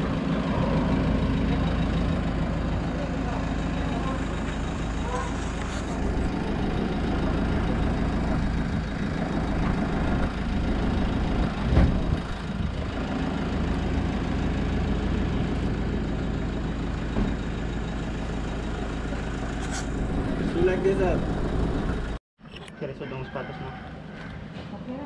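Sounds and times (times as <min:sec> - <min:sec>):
truck engine idling: 0:00.0 - 0:22.2
thump: 0:11.7 - 0:12.1, 0:17.2 - 0:17.4.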